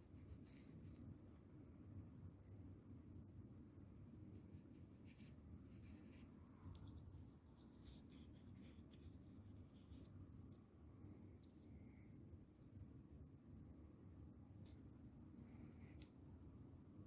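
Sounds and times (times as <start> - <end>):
brush scratching across keyboard: 0.0 - 1.0, 4.3 - 10.2
low steady hum: 0.0 - 17.0.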